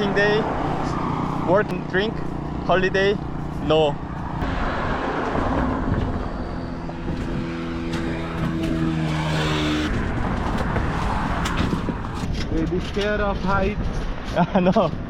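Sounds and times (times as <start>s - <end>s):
vehicle engine passing by: 0.0s - 12.4s
traffic noise rushing: 0.0s - 15.0s.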